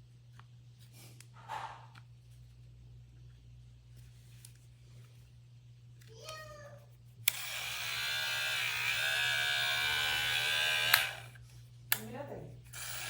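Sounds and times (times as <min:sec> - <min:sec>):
hair clipper motor buzzing: 0:07.2 - 0:11.4, 0:12.7 - 0:13.0
hair clipper switch click: 0:07.3 - 0:12.1.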